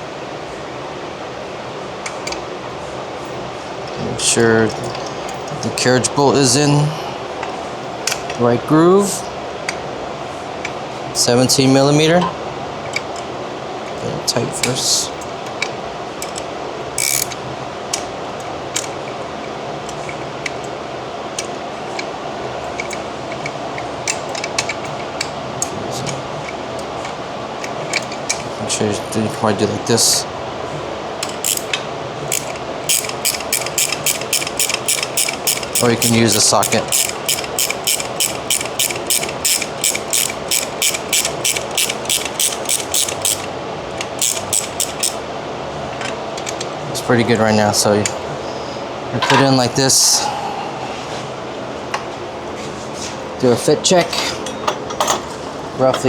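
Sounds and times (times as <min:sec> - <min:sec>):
steady background hum: 0:00.0 - 0:56.0
wrench scraping: 0:15.4 - 0:18.1, 0:31.2 - 0:45.2
wrench clicking on metal: 0:15.6 - 0:18.1, 0:31.2 - 0:45.2.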